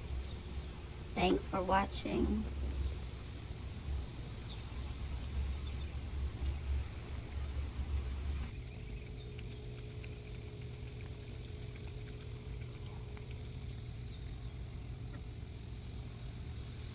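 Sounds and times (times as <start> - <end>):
heavy low rumble: 0.0 - 8.5
water fountain pump humming: 0.0 - 16.9.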